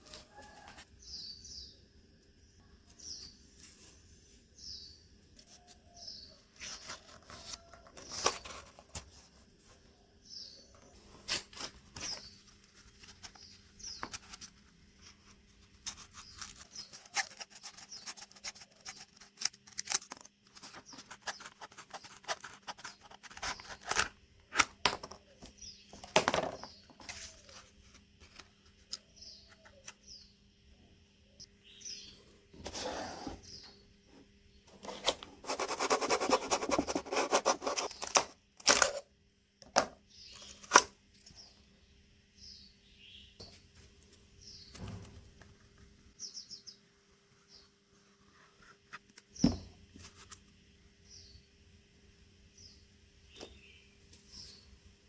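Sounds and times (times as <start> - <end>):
faint bird chirps: 0.0 - 8.1, 9.7 - 11.0, 28.8 - 34.7, 46.1 - 47.8, 52.5 - 54.8.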